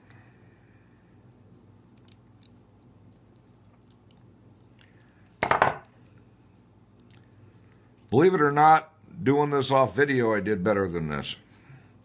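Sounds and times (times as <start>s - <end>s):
metal tools clicking: 1.8s - 4.2s.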